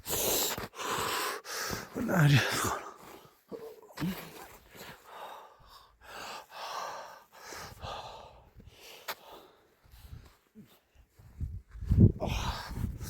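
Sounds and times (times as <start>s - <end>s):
person gasping for breath: 4.0s - 10.2s.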